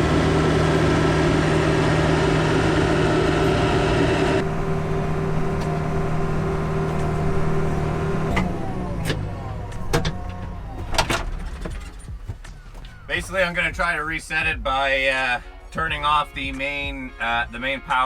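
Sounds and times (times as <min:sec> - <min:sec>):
diesel engine running: 0:00.0 - 0:16.9.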